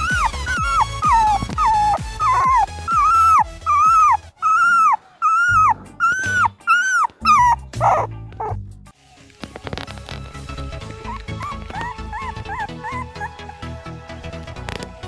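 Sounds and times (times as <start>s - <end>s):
puppy whining: 0.0s - 8.6s, 10.6s - 13.8s
puppy yelp: 0.0s - 8.6s, 11.0s - 13.7s.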